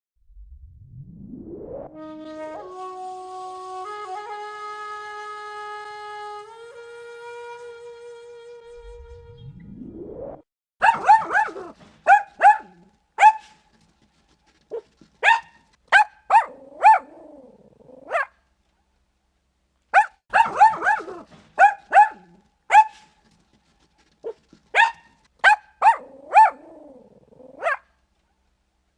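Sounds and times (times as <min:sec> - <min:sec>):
low drawn-out sound: 0:00.2 - 0:02.6, 0:08.6 - 0:10.4
dog barking: 0:10.8 - 0:13.6, 0:14.7 - 0:18.4, 0:19.9 - 0:23.2, 0:24.2 - 0:27.9.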